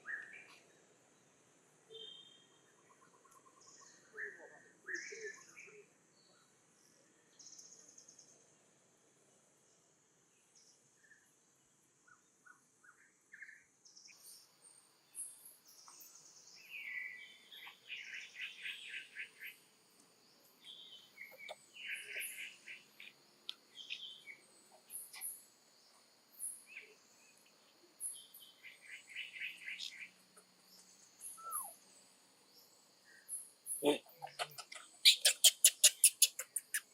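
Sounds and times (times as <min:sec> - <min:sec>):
bird chirping trills: 0:12.1 - 0:36.9
soft high insect-like hiss: 0:13.8 - 0:36.9.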